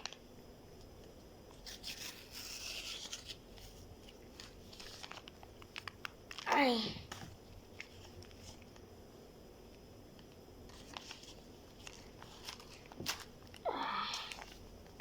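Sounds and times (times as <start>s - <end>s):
paper bag crinkling: 1.6s - 6.5s, 10.7s - 13.6s.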